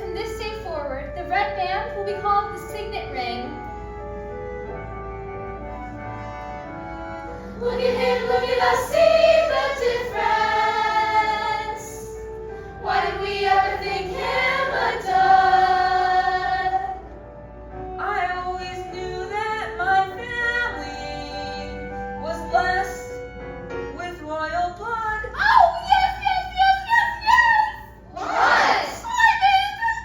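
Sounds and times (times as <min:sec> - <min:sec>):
musical accompaniment: 0:00.0 - 0:25.2
voices singing long notes: 0:07.5 - 0:12.0, 0:12.8 - 0:16.9.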